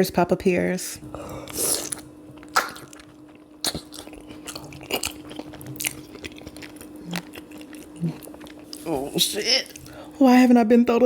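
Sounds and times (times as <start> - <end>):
person chewing food: 1.1 - 10.1
wet mouth smacks: 1.5 - 4.1.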